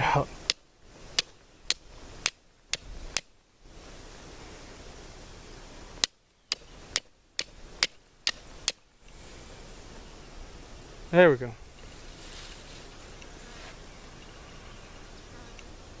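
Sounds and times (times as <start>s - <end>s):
knife striking flint clicks: 6.0s - 8.8s.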